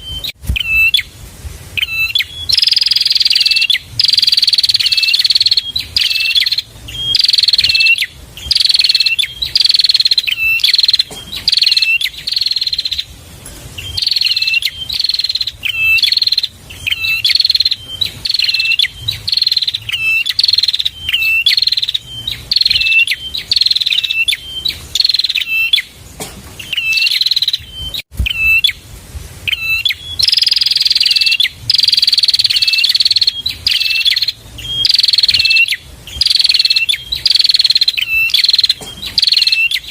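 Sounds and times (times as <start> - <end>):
bird high chirping song: 0.0 - 28.8, 29.4 - 39.9.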